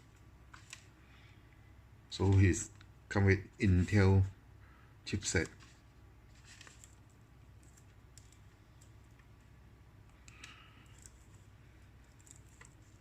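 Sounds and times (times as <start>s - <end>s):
soft rustle: 5.5s - 9.0s.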